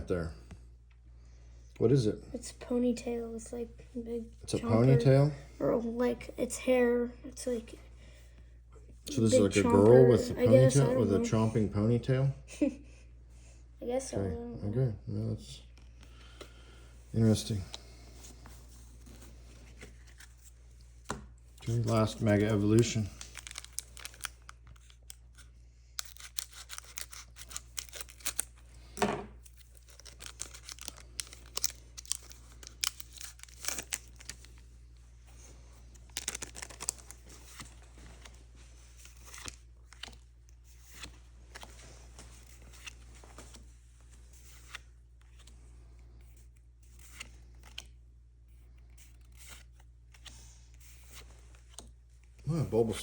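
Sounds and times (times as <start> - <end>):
foil wrapper tearing and crinkling: 21.7 - 25.4, 26.0 - 28.6, 29.4 - 34.6, 36.0 - 37.7.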